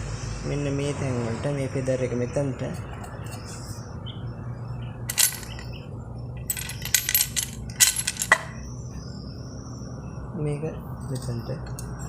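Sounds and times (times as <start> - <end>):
small metal parts clinking: 5.1 - 8.7.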